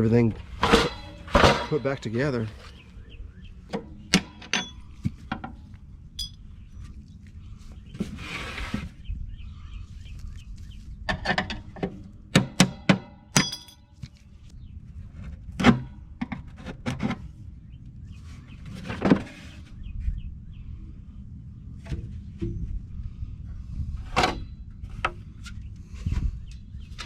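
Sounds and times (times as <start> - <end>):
sheet metal clanks and knocks: 0.6 - 2.1.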